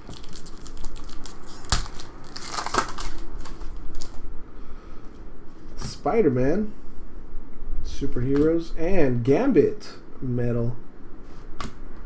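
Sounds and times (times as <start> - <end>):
cards rustling: 0.0 - 4.2
plastic wrapper crinkling: 0.0 - 4.2.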